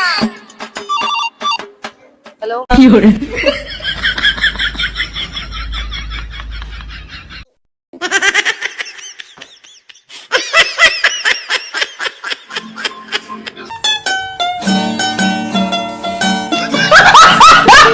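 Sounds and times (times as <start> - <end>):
high-pitched laughter: 16.6 - 17.9.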